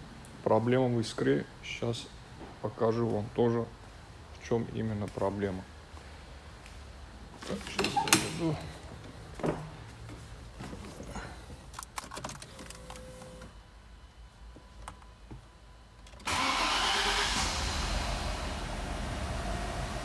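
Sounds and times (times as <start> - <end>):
car engine running rough: 16.3 - 20.0.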